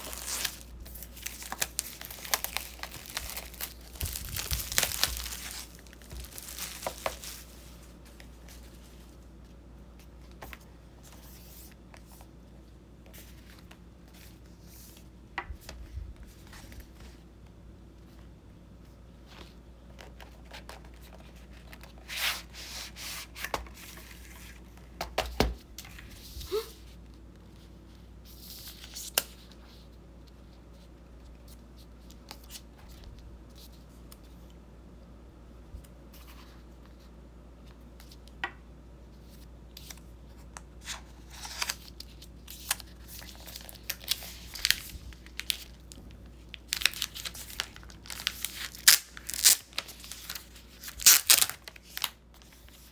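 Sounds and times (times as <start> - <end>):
paper and plastic rustling: 0.0 - 9.5, 39.2 - 52.9.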